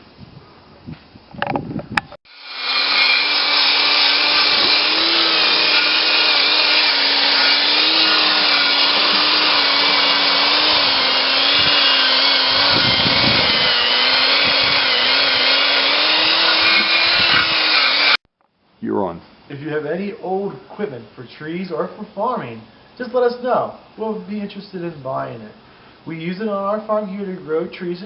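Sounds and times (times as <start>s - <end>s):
tractor engine droning: 3.3s - 18.2s.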